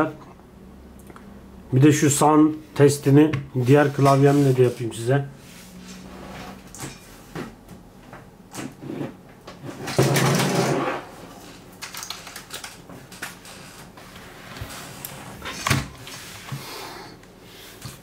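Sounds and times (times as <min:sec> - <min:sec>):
mechanical keyboard keys clacking: 0:11.8 - 0:13.3.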